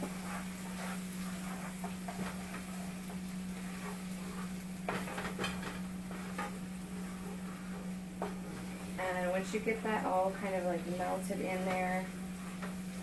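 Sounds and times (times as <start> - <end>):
low hum and hiss: 0.0 - 13.0
spoon stirring in a pan: 0.0 - 13.0
spoon scraping and tapping pan: 1.6 - 8.6.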